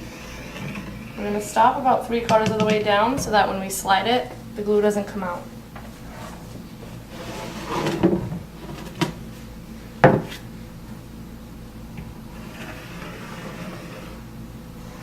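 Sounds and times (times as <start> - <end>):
wood scraping rub: 6.0 - 8.2, 12.3 - 15.0.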